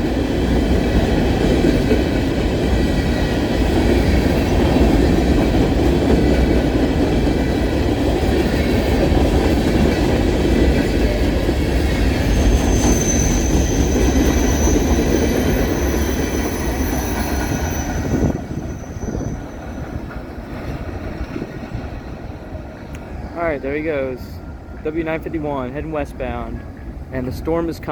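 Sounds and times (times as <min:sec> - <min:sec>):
freight cars rumbling on rails: 0:00.0 - 0:27.9
high wheel squeal: 0:12.0 - 0:20.1.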